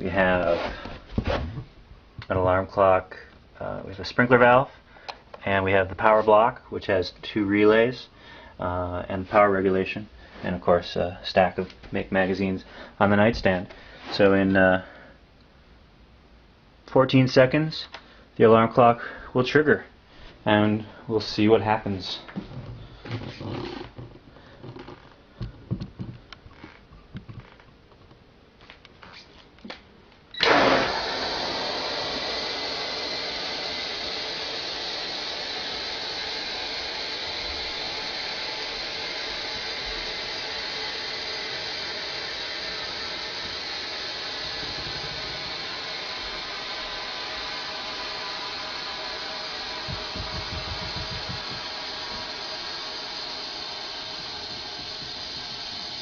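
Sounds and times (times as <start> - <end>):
rush of compressed air: 30.4 - 56.0.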